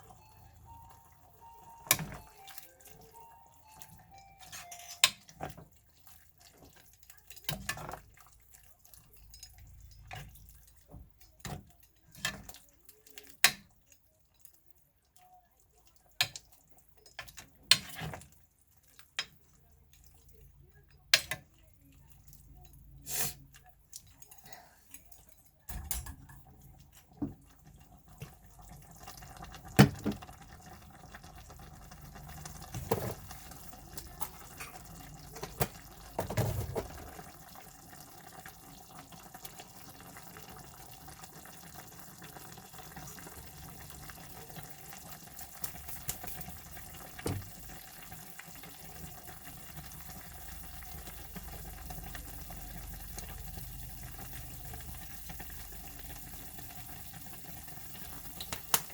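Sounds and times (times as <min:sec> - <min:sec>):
clunks of objects in sink: 0:29.8 - 0:30.2, 0:32.8 - 0:33.3, 0:35.4 - 0:37.1.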